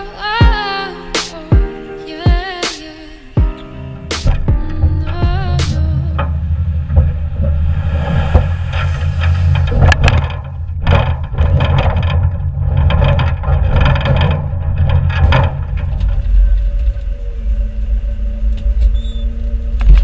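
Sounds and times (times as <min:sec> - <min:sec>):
clattering and scraping: 0:03.4 - 0:17.6
diesel tractor engine running: 0:03.4 - 0:20.0.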